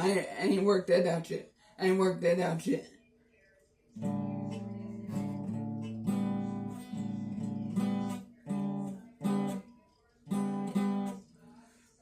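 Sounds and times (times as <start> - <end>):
acoustic guitar strumming chords: 4.0 - 11.2.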